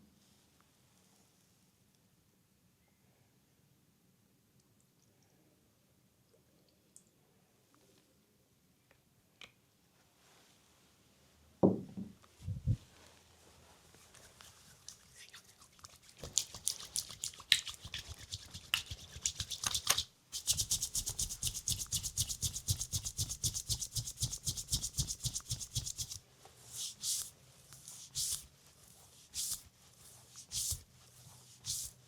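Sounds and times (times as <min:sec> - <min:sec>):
hands rubbing skin: 0:13.4 - 0:32.0.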